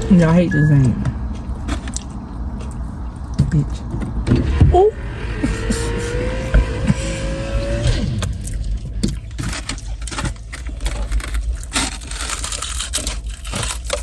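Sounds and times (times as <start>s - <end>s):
tone gliding down: 0.0s - 1.5s, 4.2s - 9.0s
low steady rumble: 0.0s - 14.0s.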